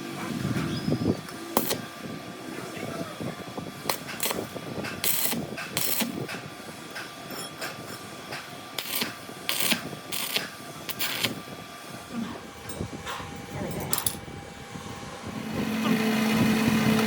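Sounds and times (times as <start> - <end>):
workshop background noise: 0.0 - 17.0.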